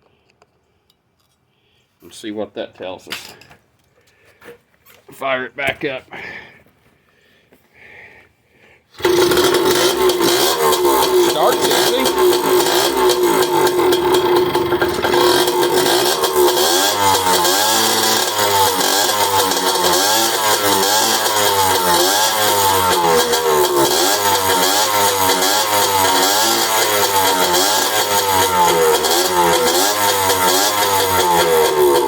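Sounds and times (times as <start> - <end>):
dirt bike engine revving: 9.0 - 32.0.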